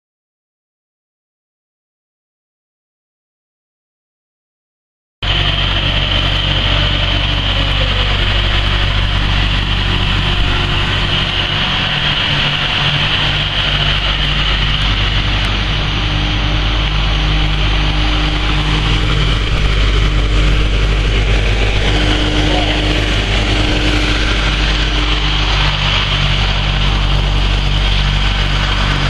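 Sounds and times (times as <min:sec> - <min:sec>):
engine running steadily: 0:05.2 - 0:29.0
high whine: 0:05.2 - 0:29.0.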